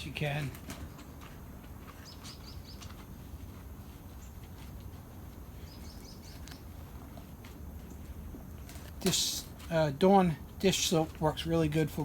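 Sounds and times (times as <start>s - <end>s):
low background hum: 0.0s - 12.0s
faint bird chirps: 5.6s - 6.8s.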